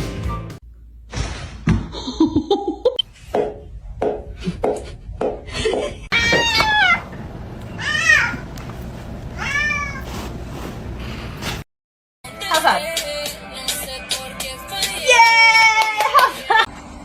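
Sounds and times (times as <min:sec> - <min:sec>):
cat meowing: 0:07.8 - 0:08.4, 0:09.4 - 0:10.0.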